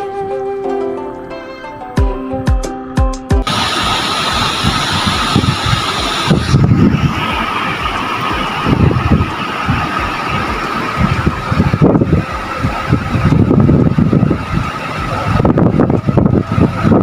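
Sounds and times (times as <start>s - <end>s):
thin whine: 3.4s - 17.0s
vehicle rumbling on dirt track: 4.4s - 17.0s.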